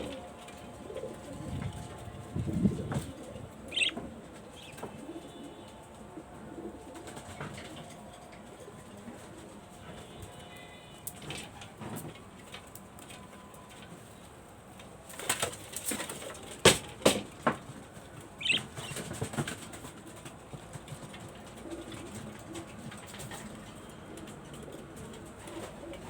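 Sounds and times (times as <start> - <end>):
pigeons cooing: 0.0 - 9.8, 18.2 - 26.0
wings flapping: 15.0 - 23.8.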